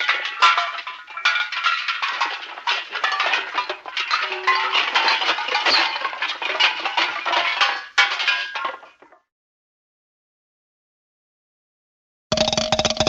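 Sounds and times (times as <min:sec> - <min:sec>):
metal objects clattering: 0:00.0 - 0:09.2.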